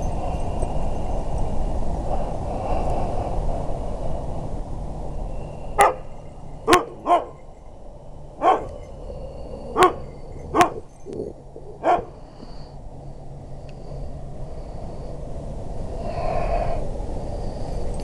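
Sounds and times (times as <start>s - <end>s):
steady low rumble: 0.0s - 18.0s
dog barking: 5.8s - 6.1s, 6.7s - 7.4s, 8.4s - 8.8s, 9.8s - 10.9s, 11.8s - 12.2s.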